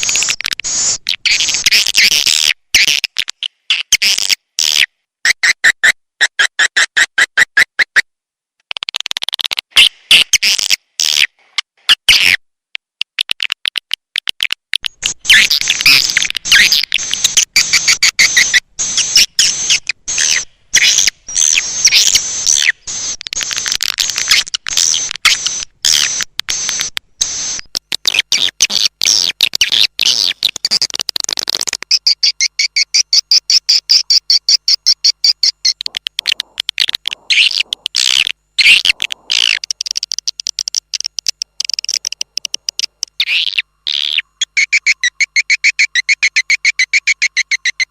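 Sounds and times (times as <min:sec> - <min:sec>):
swiftlets chirping and twittering: 0:15.3 - 0:22.9, 0:33.7 - 0:47.9.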